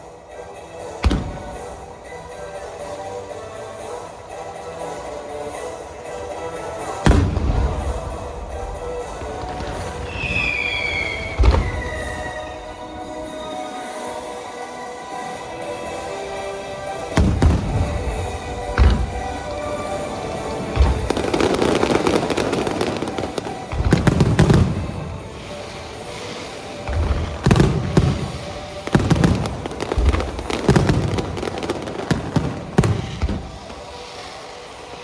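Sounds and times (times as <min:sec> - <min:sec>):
background music: 0:00.0 - 0:35.0
fireworks crackling: 0:06.0 - 0:35.0
fireworks booming: 0:07.1 - 0:12.8, 0:16.9 - 0:35.0.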